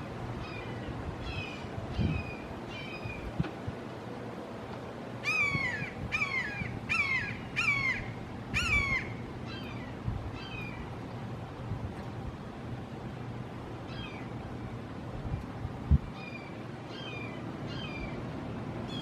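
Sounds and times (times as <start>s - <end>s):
hawk screaming calls: 5.2s - 10.8s.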